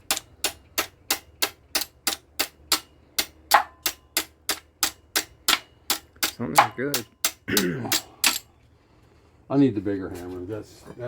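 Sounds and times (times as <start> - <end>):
hammer tapping on metal: 0.0 - 8.4.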